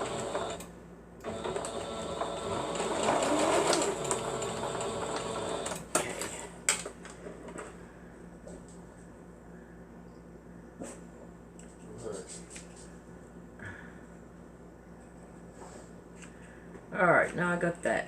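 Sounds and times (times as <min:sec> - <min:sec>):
sewing machine stitching: 0:00.0 - 0:06.4.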